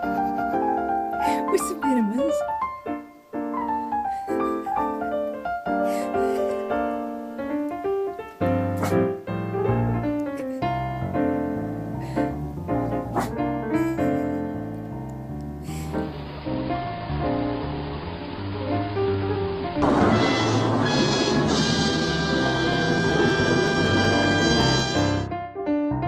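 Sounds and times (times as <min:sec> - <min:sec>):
piano music: 0:00.0 - 0:26.0
low bass notes: 0:08.5 - 0:25.3.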